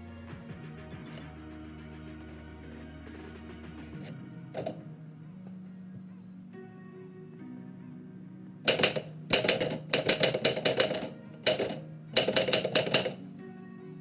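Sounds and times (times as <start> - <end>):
faint background music: 0.0 - 14.0
typewriter keys clacking: 8.7 - 13.2.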